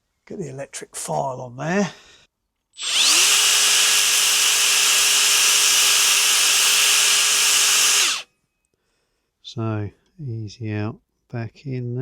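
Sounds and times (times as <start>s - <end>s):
electric belt file grinding: 2.8s - 8.2s.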